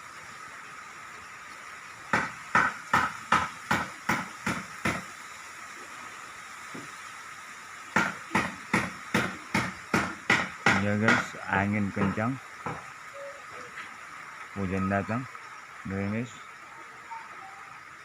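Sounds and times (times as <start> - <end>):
steady hiss: 0.0 - 18.0
sharp knocks: 2.1 - 5.0, 8.0 - 12.9.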